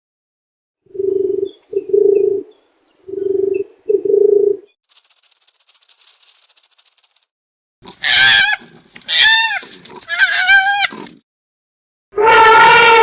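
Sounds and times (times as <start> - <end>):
bird cooing: 0.9 - 2.5, 3.1 - 4.7
dry high rattling hiss: 4.8 - 7.3.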